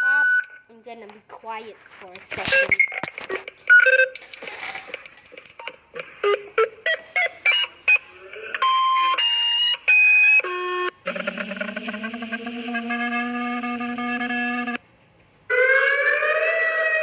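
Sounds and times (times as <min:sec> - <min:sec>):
electronic alert beeps: 0:00.0 - 0:08.1
longer alert tones: 0:00.0 - 0:14.7.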